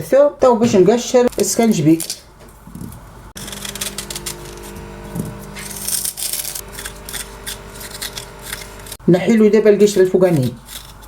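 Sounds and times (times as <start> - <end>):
knife scraping ginger: 3.4 - 9.0, 9.7 - 11.0.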